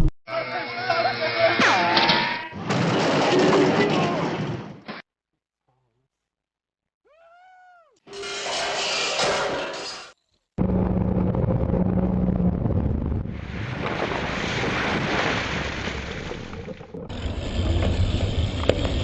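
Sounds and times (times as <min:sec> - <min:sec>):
low engine hum: 0:10.6 - 0:14.4.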